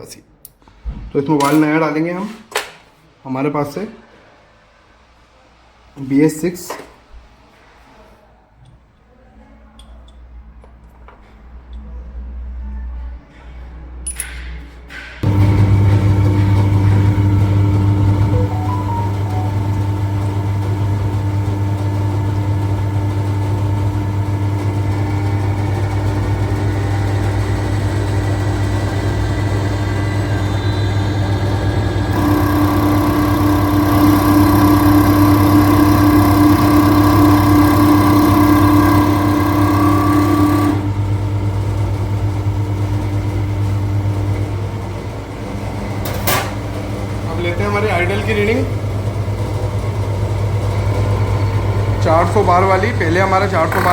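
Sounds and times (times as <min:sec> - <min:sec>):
high machine whine: 0:15.2 - 0:53.9
test bench machine hum: 0:15.2 - 0:53.9.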